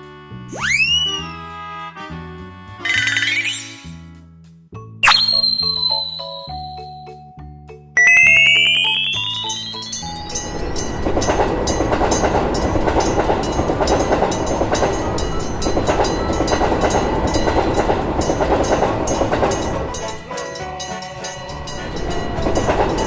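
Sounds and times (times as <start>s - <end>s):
train rumble: 10.1s - 23.0s
wheels clickety-clack over rail joints: 10.2s - 23.0s.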